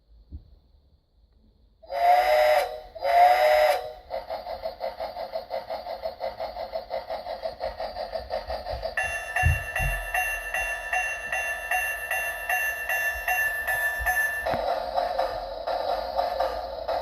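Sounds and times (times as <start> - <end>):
electronic train chuffing: 1.8 - 17.0
electronic steam whistle toots: 1.9 - 4.1.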